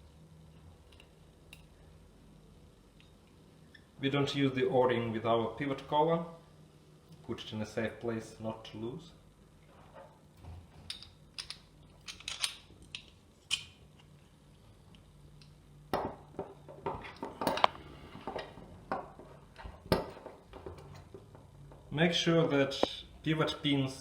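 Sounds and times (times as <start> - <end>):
metal parts clicking and clinking: 10.9 - 14.1.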